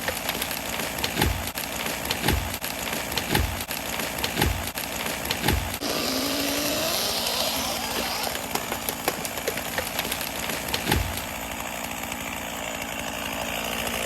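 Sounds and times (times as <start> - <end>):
chainsaw running and revving: 0.0 - 14.0
heavy thumps: 7.9 - 11.3.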